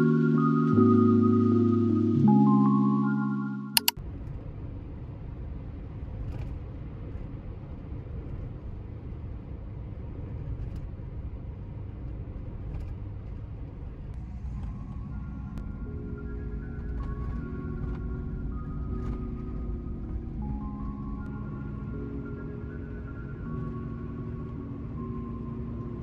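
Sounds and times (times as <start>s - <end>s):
music: 0.0s - 4.0s, 14.2s - 26.0s
sharp clicks: 3.8s - 4.0s
steady low rumble: 4.0s - 26.0s.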